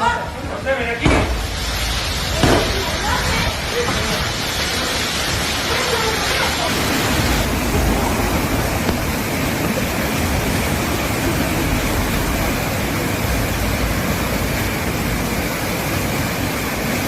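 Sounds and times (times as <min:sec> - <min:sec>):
heavy rain and floodwater rushing: 0:00.0 - 0:17.0
deep rumble: 0:06.7 - 0:16.9.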